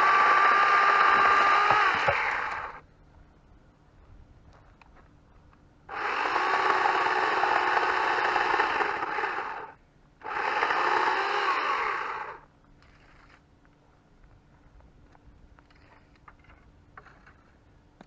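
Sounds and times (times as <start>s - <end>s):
electric chainsaw cutting wood: 0.0s - 2.8s, 5.9s - 12.4s.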